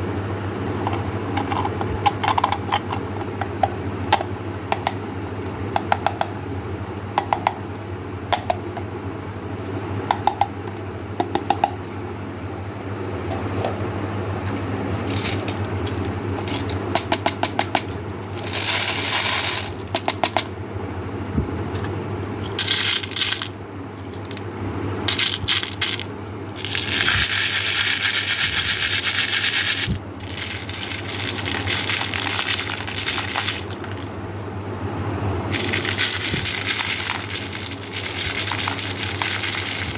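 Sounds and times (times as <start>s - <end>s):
steady low hum: 0.0s - 39.9s
candies clattering in container: 15.0s - 20.5s, 22.4s - 24.5s, 25.1s - 34.2s, 35.5s - 39.9s
candy being poured: 18.4s - 19.9s, 26.6s - 34.1s, 35.6s - 39.9s.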